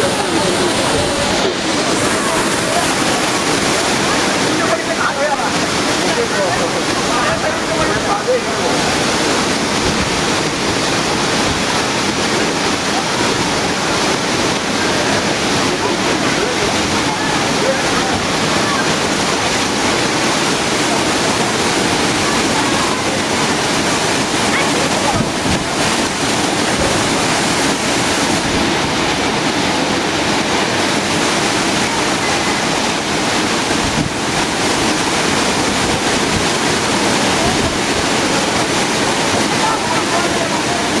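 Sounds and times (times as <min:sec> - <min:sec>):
waterfall pouring: 0:00.0 - 0:41.0.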